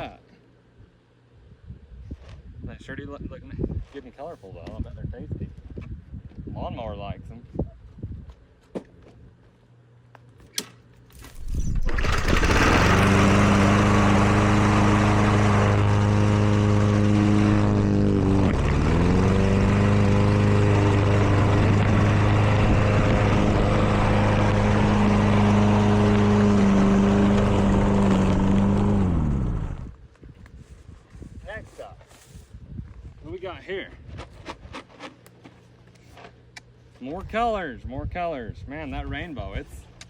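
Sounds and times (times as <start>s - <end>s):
lawn mower engine running: 11.7s - 29.9s.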